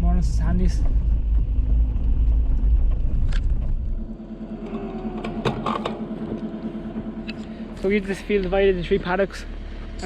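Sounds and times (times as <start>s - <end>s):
vehicle engine rumbling: 0.0s - 10.0s.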